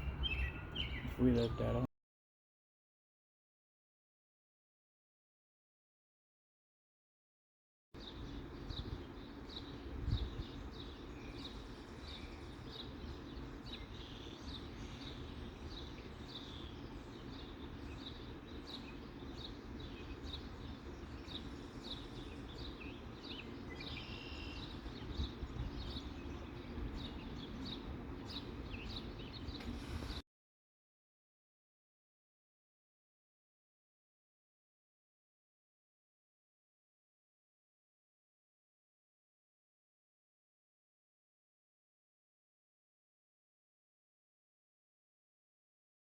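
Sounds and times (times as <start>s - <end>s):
low rumble of outdoor noise: 0.0s - 1.9s, 8.0s - 30.2s
small birds chirping: 0.0s - 1.9s, 8.0s - 30.2s.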